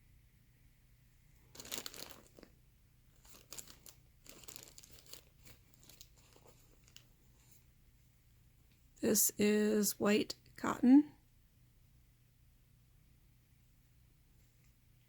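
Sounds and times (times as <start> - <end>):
packaging crinkling and rustling: 1.4 - 7.6.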